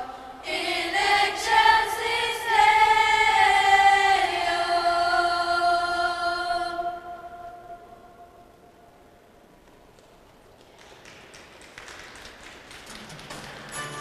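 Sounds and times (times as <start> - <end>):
choir singing a held chord: 0.0 - 8.5.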